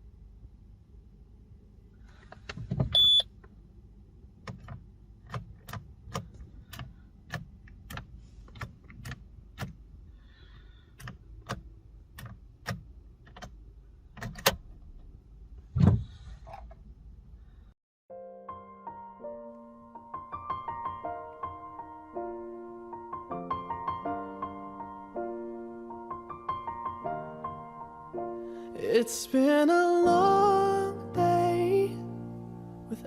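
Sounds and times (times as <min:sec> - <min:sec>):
heavy thump: 0:15.7 - 0:16.3.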